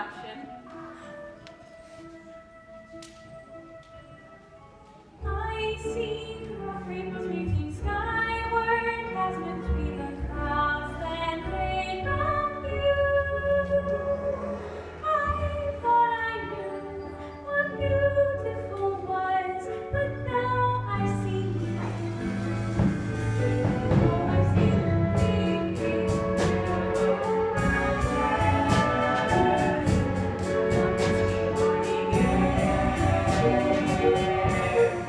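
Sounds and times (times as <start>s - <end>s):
instrumental accompaniment: 0.0s - 35.0s
woman singing: 5.2s - 22.9s, 23.6s - 35.0s.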